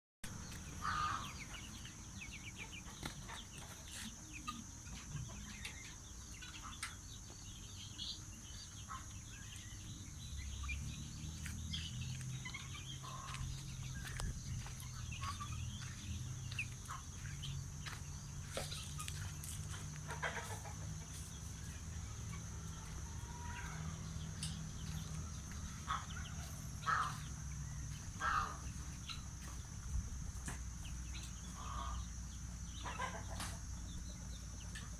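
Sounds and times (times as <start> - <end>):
steady low hum: 0.3 - 34.9
fowl clucking: 0.8 - 1.6, 12.5 - 21.3, 25.7 - 27.3, 28.1 - 29.2, 32.8 - 33.6.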